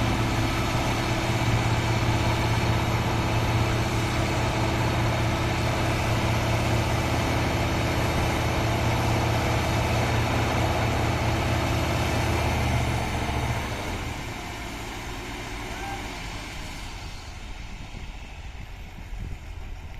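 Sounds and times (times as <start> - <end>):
pile driving machine drone: 0.0 - 19.9.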